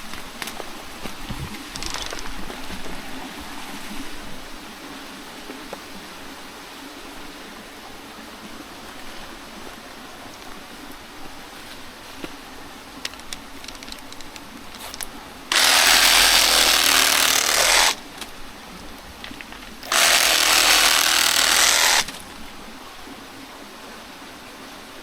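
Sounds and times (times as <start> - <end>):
small clicks and rustles: 0.0 - 3.0, 11.6 - 22.4
reciprocating saw cutting plant: 13.0 - 18.4, 19.4 - 22.4.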